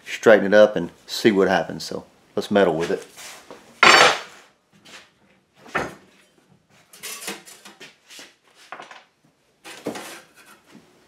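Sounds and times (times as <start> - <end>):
metal pieces clattering: 3.8 - 4.3.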